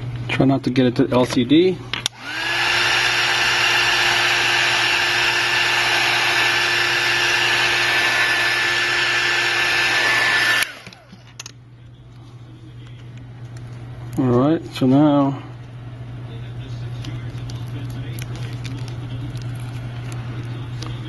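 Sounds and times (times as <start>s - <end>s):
heat gun blowing air: 2.0s - 11.2s.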